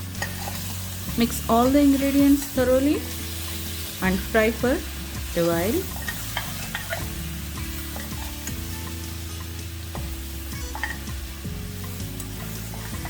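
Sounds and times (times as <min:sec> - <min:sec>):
meat sizzling in a pot: 0:00.0 - 0:13.0
spoon stirring clicks and scrapes: 0:00.1 - 0:00.8, 0:05.8 - 0:07.1, 0:10.7 - 0:11.1.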